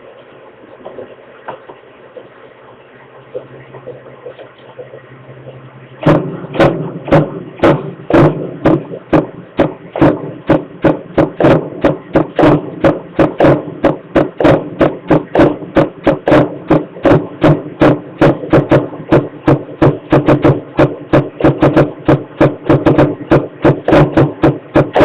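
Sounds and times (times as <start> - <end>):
low steady hum: 0.0 - 25.0
sharp ringing knocks: 6.0 - 25.0.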